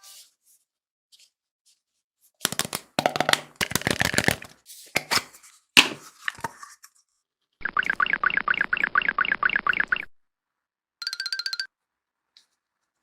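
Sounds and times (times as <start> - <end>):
frozen stress ball crackling: 2.5 - 4.6.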